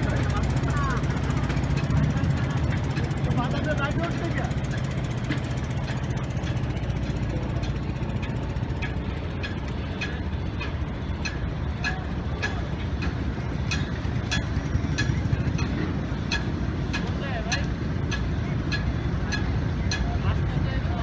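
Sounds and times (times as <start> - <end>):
sharp ticks: 0.0 - 20.1
engine running with low rumble: 0.0 - 21.0.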